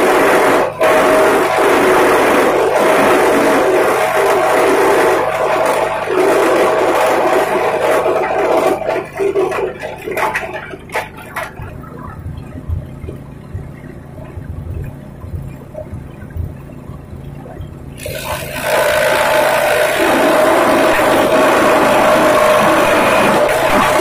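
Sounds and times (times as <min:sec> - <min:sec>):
grass chopper shredding: 0:00.0 - 0:11.6, 0:18.0 - 0:24.0
low hum and rumble: 0:00.0 - 0:24.0.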